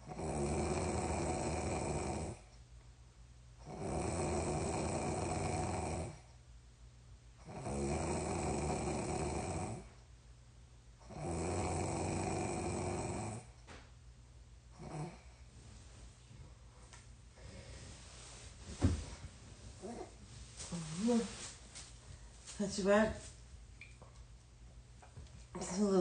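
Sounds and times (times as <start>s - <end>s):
person snoring: 0.0s - 2.4s, 3.6s - 6.2s, 7.4s - 9.9s, 11.0s - 13.5s, 14.8s - 15.3s.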